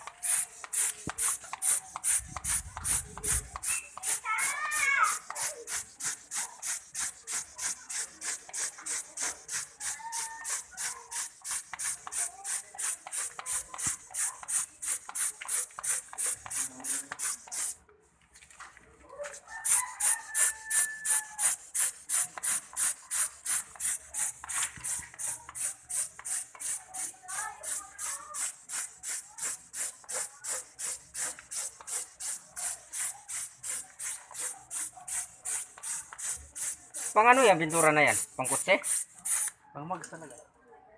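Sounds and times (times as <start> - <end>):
paint sprayer hissing puffs: 0.0 - 17.8, 19.6 - 39.6
rooster crowing: 19.5 - 21.6.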